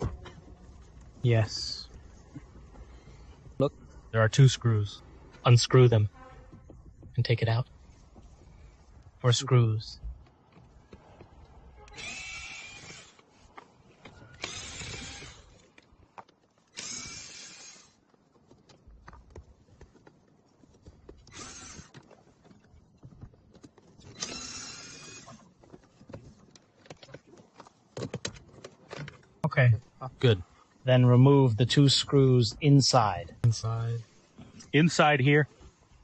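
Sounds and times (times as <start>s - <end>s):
cordless screwdriver running: 11.9s - 13.2s, 14.4s - 15.5s, 16.8s - 17.9s, 21.3s - 21.9s, 24.1s - 25.4s.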